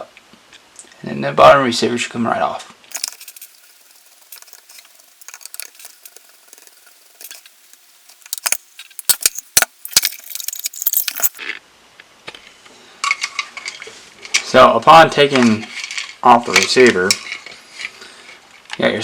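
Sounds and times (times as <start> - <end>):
sharp clicks and knocks: 2.9 - 11.4.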